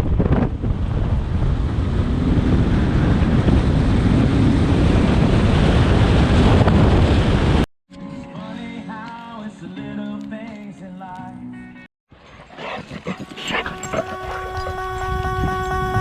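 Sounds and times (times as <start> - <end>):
wind buffeting microphone: 0.0 - 7.7, 13.1 - 16.0.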